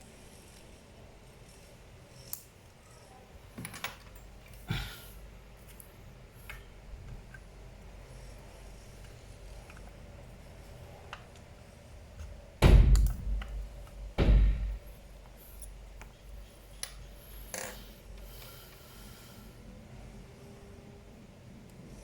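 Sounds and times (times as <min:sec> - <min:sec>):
heavy thumps: 0:12.6 - 0:15.1.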